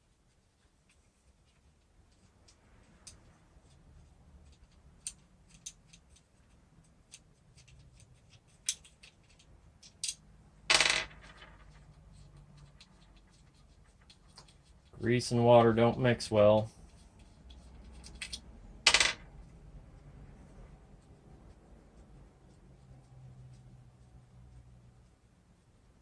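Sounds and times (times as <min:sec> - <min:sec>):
small metal parts clicking: 0:04.4 - 0:12.0, 0:17.8 - 0:19.2.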